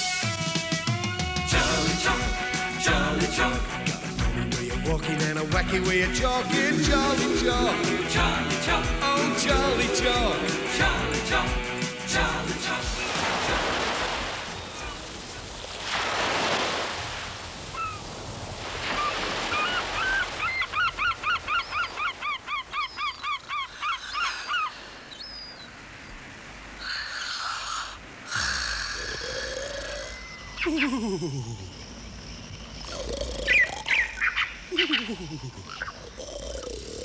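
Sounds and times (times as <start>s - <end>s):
waves washing in: 1.5s - 29.6s.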